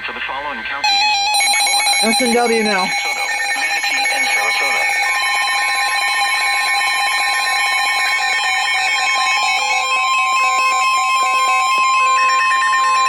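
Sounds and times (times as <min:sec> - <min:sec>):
steady high alert beep: 0:00.8 - 0:13.0
other alert tones: 0:00.9 - 0:05.1
beeping tone on and off: 0:00.9 - 0:13.0.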